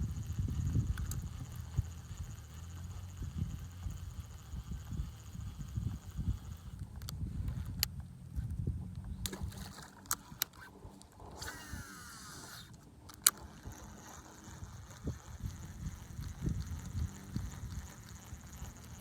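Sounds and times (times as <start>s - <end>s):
fishing reel spool whirring: 0.0s - 19.0s
sharp click: 9.2s - 18.3s.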